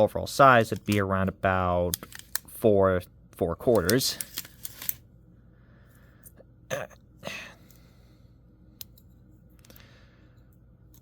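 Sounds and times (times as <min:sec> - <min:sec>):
faint low hum: 0:00.0 - 0:11.0
person clearing throat: 0:06.7 - 0:07.5.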